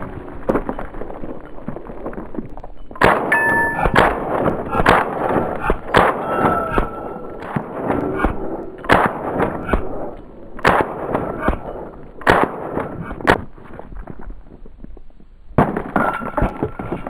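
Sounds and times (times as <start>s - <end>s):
rifle shots cracking: 3.0s - 13.5s.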